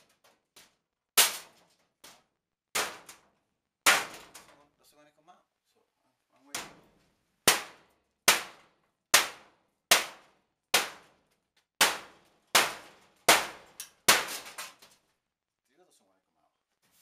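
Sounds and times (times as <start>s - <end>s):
hammer striking metal furnace: 1.2s - 3.2s, 3.8s - 4.5s, 7.5s - 11.1s, 11.8s - 14.7s.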